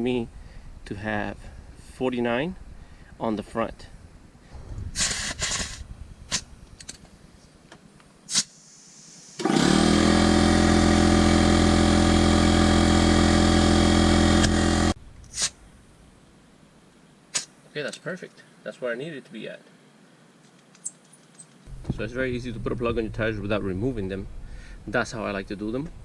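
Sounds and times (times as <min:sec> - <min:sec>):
air compressor humming and hissing: 0:04.5 - 0:06.5, 0:08.3 - 0:15.5.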